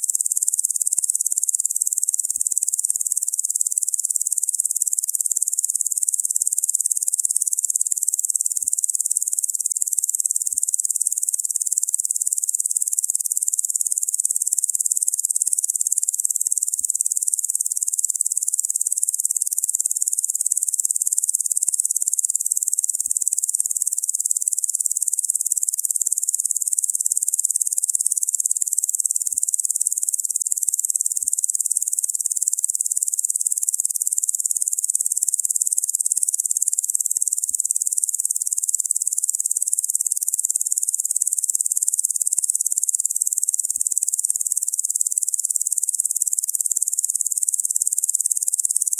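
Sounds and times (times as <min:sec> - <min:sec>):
high-pitched insect buzzing: 0:14.0 - 0:48.9.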